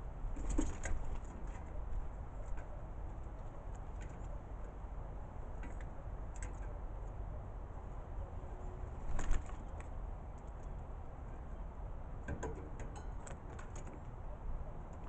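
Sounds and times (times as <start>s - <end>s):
bird wings flapping: 0.4s - 1.4s, 9.0s - 9.8s.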